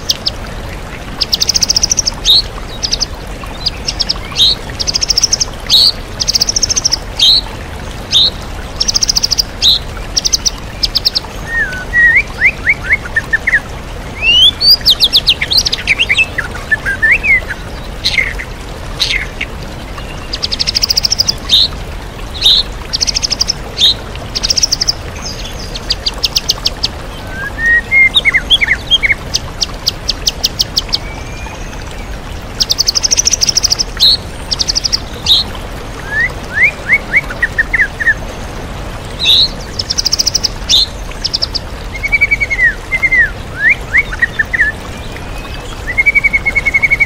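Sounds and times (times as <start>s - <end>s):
waterfall rushing: 0.0s - 47.0s
bird singing with trills and whistles: 39.2s - 47.0s.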